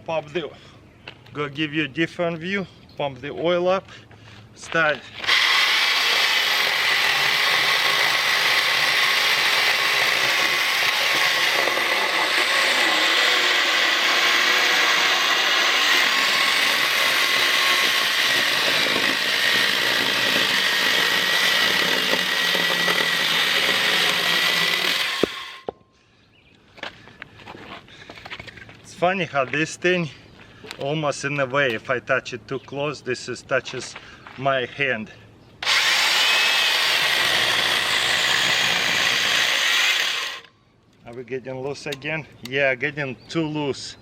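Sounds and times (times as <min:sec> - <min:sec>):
electric chainsaw cutting log: 0:05.2 - 0:25.7, 0:35.6 - 0:40.5.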